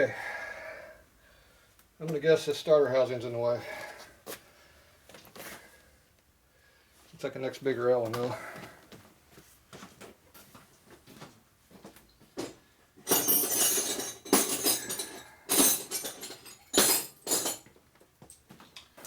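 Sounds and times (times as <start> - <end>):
metal tools clinking: 13.0 - 18.4.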